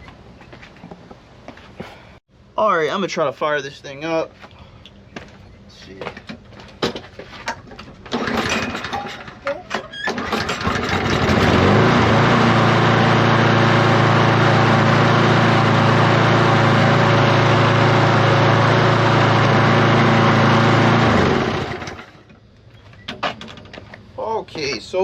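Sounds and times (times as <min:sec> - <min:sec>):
lawnmower pull-starting: 0:08.1 - 0:22.2.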